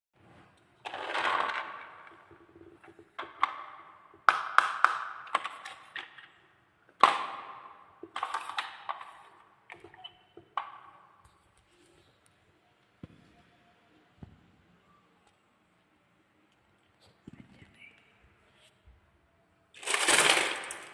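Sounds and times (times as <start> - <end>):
marbles clacking in wooden run: 19.8 - 20.9.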